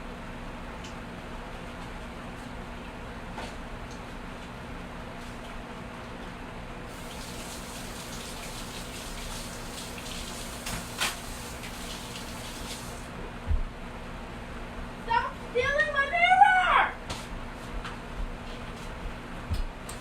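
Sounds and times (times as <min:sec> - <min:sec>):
tap water running: 0:06.9 - 0:13.1.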